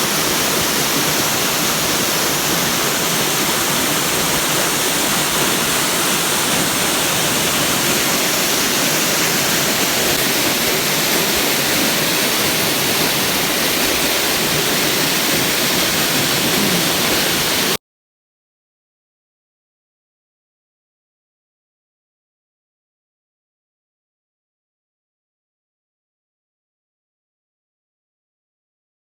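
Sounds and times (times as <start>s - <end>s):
waterfall rushing: 0.0s - 17.8s.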